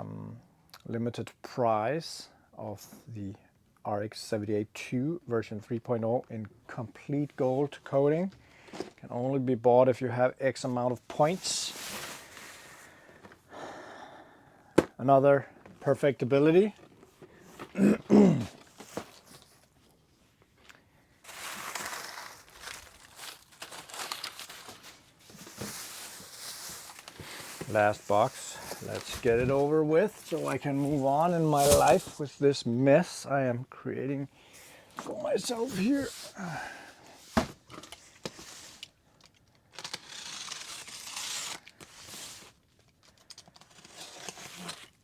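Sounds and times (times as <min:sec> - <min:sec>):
rustling: 0:20.5 - 0:32.4
plastic packaging crinkling: 0:21.2 - 0:32.2.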